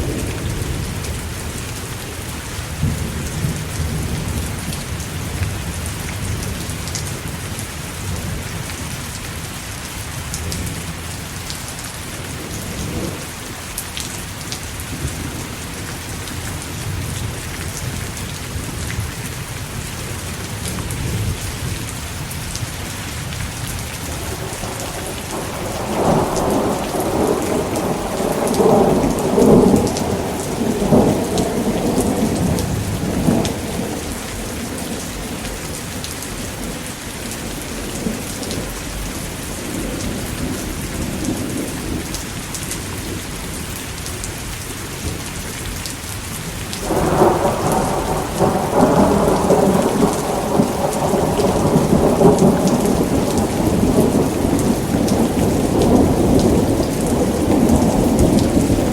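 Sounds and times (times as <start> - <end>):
steady rain falling: 0.0 - 58.9
rolling thunder: 24.1 - 39.0, 46.8 - 58.9.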